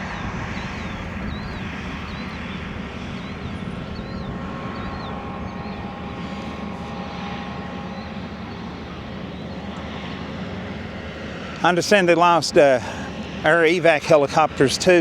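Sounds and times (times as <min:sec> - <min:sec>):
low mechanical rumble: 0:00.0 - 0:10.8.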